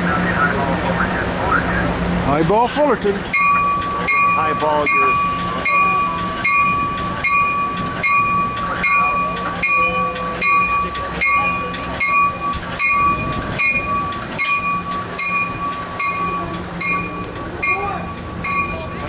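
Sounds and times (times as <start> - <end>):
train bell ringing: 2.4 - 19.0.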